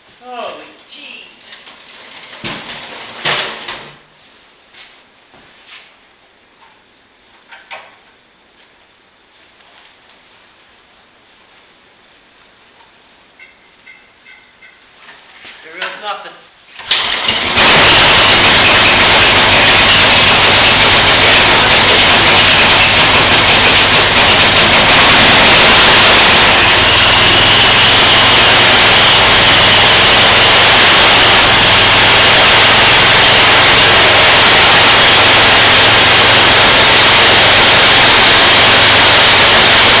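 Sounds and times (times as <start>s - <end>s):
snowblower engine running: 16.8s - 40.0s.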